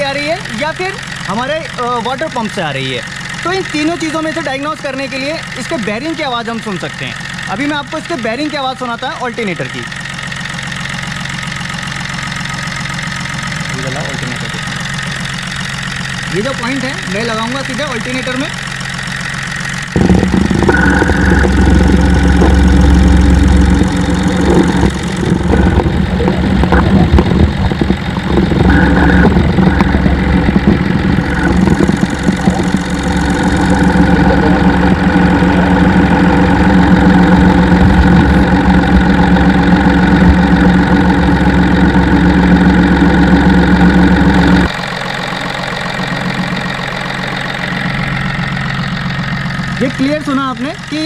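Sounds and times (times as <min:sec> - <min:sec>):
engine bearing running noise: 0:00.0 - 0:51.0.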